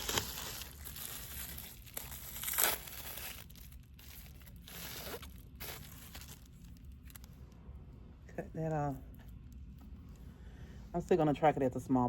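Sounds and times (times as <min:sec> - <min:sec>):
food packaging crinkling and tearing: 0:00.0 - 0:07.3
sharp crackle: 0:00.0 - 0:07.3.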